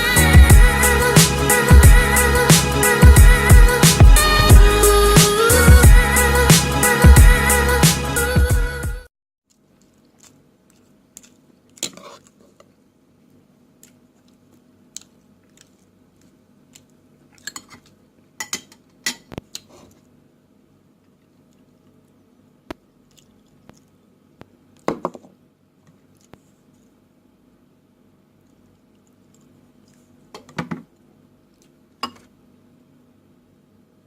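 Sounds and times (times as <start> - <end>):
chewing: 9.5 - 12.7, 13.3 - 18.0, 21.0 - 24.9, 25.8 - 27.0, 28.4 - 30.2, 31.4 - 32.0
faint steady hum: 9.5 - 34.0.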